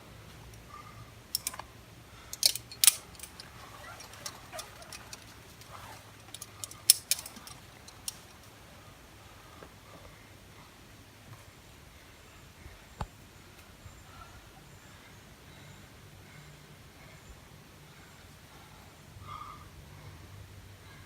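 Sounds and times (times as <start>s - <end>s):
metal climbing gear clinking: 1.3s - 8.5s.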